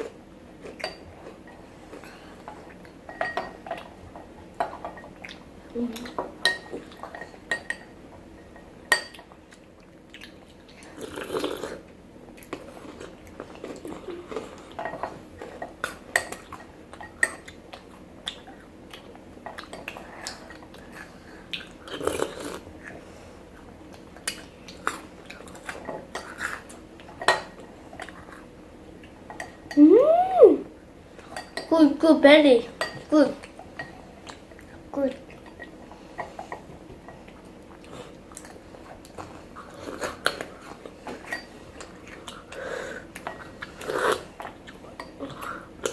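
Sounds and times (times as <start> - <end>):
chewing: 9.1 - 29.6, 33.4 - 45.9.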